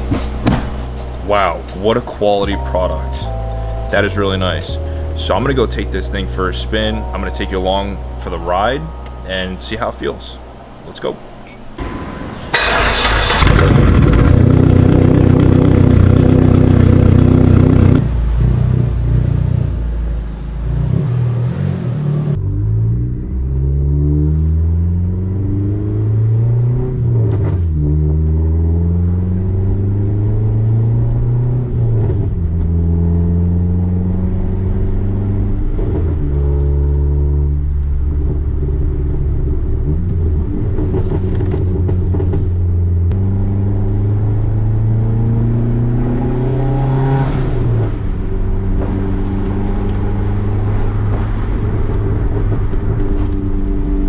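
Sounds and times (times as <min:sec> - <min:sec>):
car engine accelerating through gears: 0:11.5 - 0:54.0.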